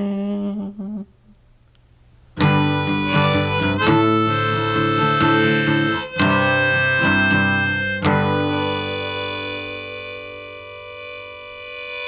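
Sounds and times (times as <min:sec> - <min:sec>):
guitar: 0:02.4 - 0:12.0
harmonica: 0:02.4 - 0:12.0.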